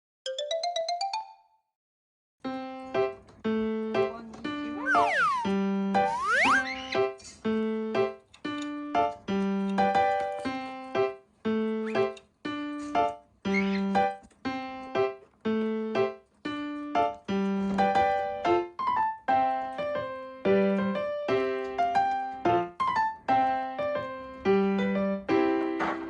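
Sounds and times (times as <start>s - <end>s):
piano melody: 2.4s - 26.0s.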